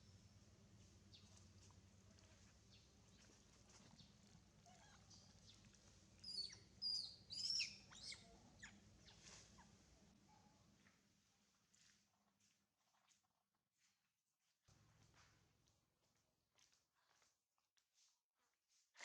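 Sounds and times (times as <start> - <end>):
high-pitched chirping calls: 6.3 - 8.8.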